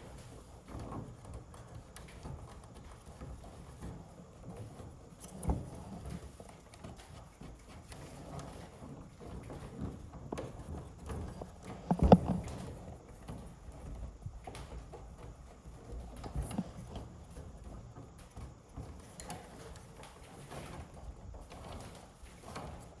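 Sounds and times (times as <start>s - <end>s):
light knocks and taps: 9.2s - 15.4s, 16.0s - 20.9s.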